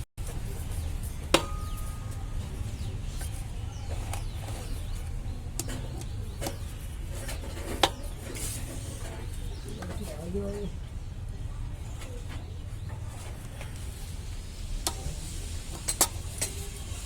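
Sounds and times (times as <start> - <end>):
low steady hum: 0.2 - 15.7
metal tools clinking: 1.4 - 2.5.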